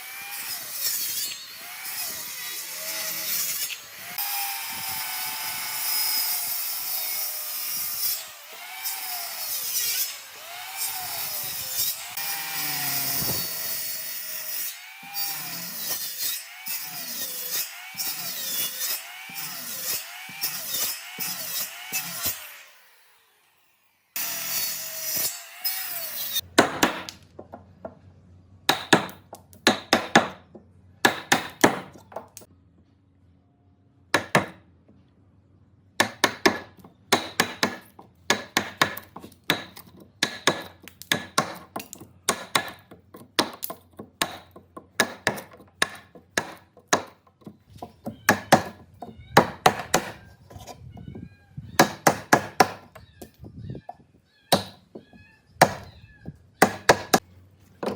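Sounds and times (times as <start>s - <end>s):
power tool running: 1.5s - 15.7s.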